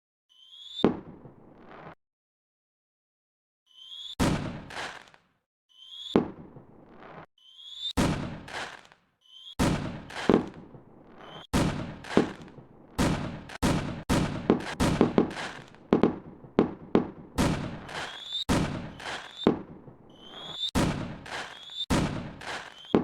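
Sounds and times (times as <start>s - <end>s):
fireworks whistling: 0.3s - 2.0s, 3.7s - 23.0s
fireworks bursting: 4.2s - 5.3s, 5.9s - 23.0s.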